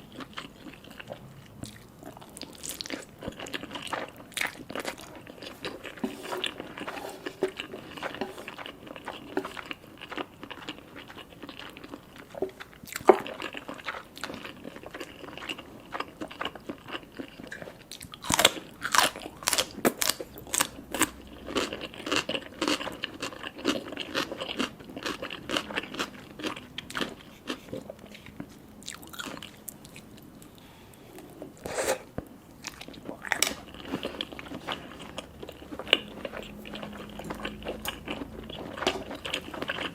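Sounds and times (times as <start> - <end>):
close chewing and biting: 0.0 - 30.6, 32.6 - 39.9.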